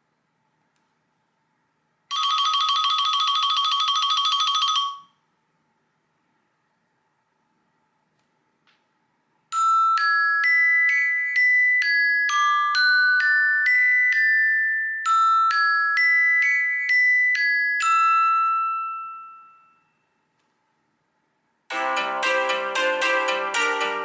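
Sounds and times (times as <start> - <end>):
mallet percussion ringtone melody: 9.5 - 20.0, 21.7 - 24.0.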